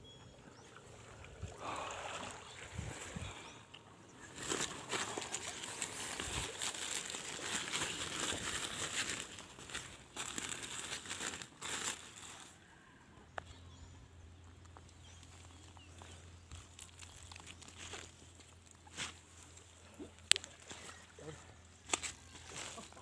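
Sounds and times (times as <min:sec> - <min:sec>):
crinkling and crackling: 0:04.1 - 0:12.6, 0:14.6 - 0:23.0.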